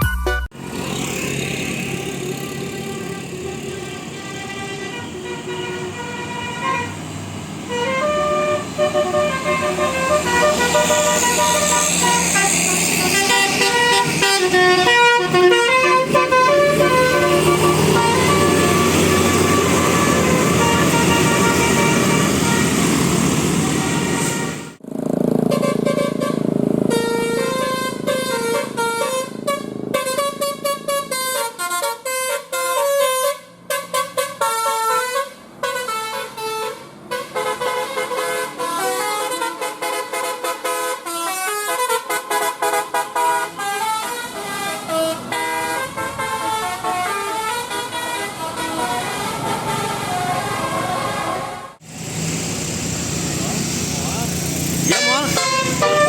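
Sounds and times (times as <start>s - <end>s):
multi-tone air horn tune: 1.7s - 7.1s, 7.7s - 24.8s, 25.4s - 51.8s, 54.8s - 56.0s
loud noisy sound: 7.2s - 30.8s.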